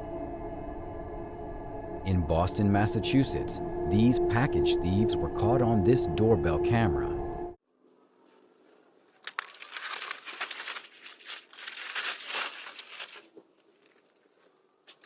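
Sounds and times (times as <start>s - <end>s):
packaging rustling and crinkling: 9.0s - 15.0s.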